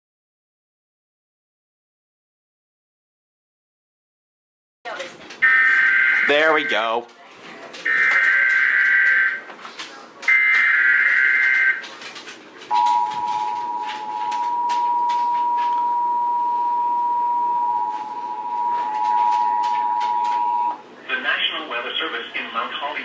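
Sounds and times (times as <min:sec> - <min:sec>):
two-tone attention signal: 0:12.7 - 0:20.8.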